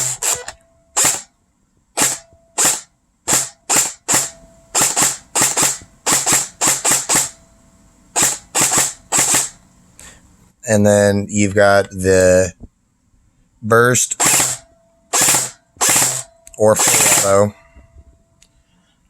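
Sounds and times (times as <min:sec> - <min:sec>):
airsoft gun firing single shots: 0:00.0 - 0:01.3, 0:02.0 - 0:07.4, 0:08.2 - 0:09.6, 0:14.2 - 0:17.5.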